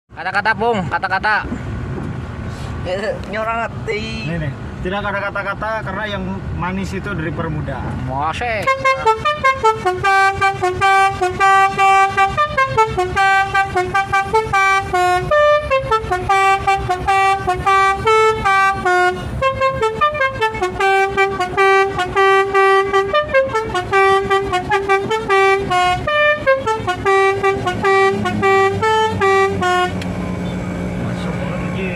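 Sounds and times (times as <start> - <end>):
multi-note bus horn tune: 8.6 - 30.0.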